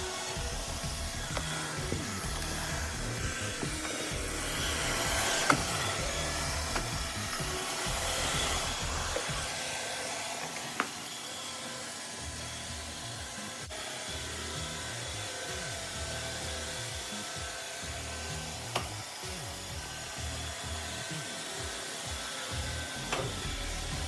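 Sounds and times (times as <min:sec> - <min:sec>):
robot vacuum whirring: 0:00.0 - 0:24.0.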